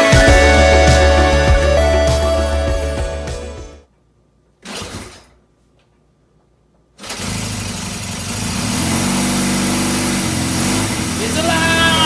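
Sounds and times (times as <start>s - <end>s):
motorcycle engine starting and running: 6.9s - 12.0s.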